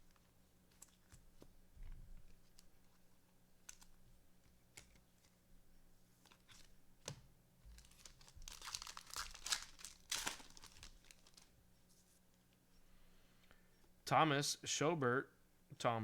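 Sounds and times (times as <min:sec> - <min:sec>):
plastic wrapper crinkling and tearing: 0:07.7 - 0:11.5.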